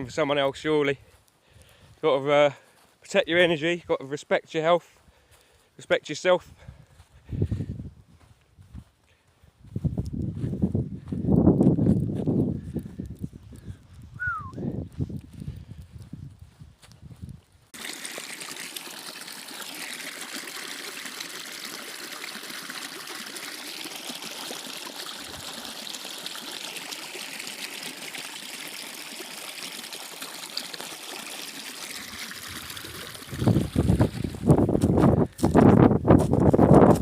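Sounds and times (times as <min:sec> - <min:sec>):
wind buffeting microphone: 0:06.7 - 0:08.9, 0:09.6 - 0:17.5, 0:32.5 - 0:37.0
small stream trickling: 0:17.7 - 0:35.6.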